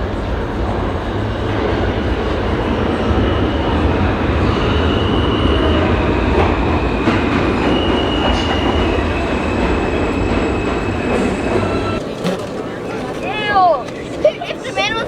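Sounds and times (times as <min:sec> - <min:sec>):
subway train rumble: 0:00.0 - 0:15.0
wheels squealing: 0:07.4 - 0:15.0.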